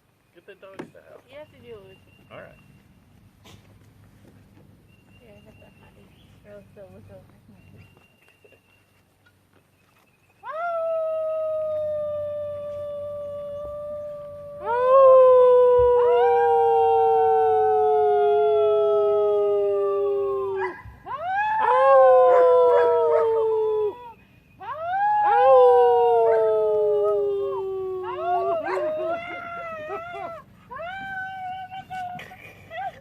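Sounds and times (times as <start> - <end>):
people howling: 10.4 - 33.0
dogs howling: 10.5 - 32.3.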